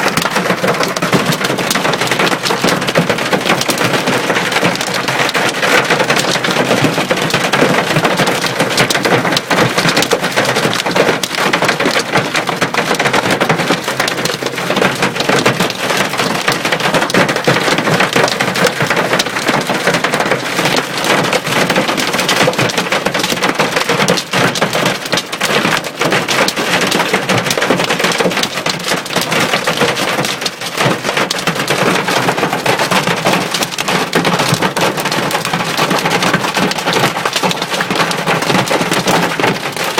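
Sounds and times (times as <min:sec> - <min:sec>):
hail drumming on car roof: 0:00.0 - 0:39.9.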